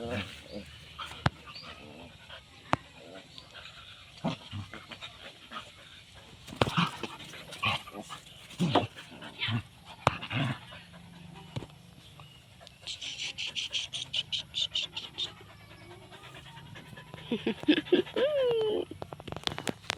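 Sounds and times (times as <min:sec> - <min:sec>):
dog panting: 0:00.0 - 0:19.0
dog vocalizing: 0:12.8 - 0:19.0.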